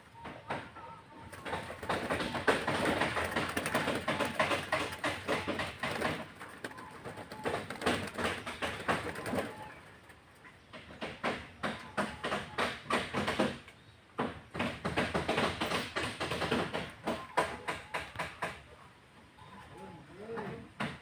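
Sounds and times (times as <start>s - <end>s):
dove cooing: 0.1s - 10.0s, 19.4s - 20.7s.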